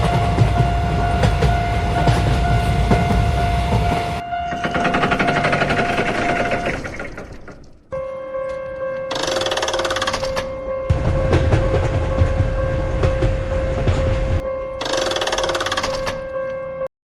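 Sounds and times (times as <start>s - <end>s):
steady high tone: 0.0s - 7.2s
train rumbling and clattering: 0.0s - 7.9s, 8.8s - 16.3s
fast rattling: 4.6s - 7.9s, 14.8s - 16.2s.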